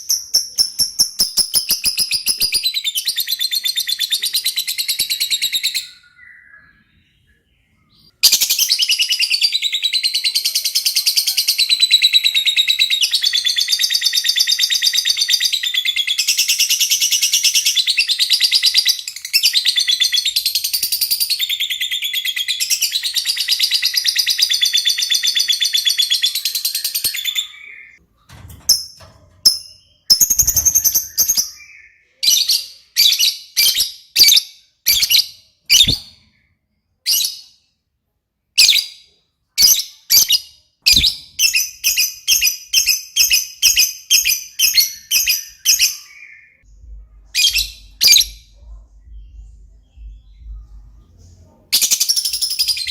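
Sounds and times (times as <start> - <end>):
lovebird singing: 28.7 - 36.4.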